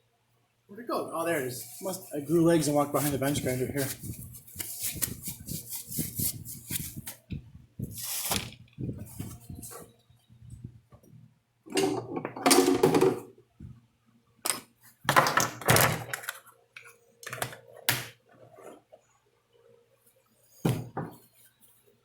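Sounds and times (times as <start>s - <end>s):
tools clunking and rattling: 11.7s - 13.3s.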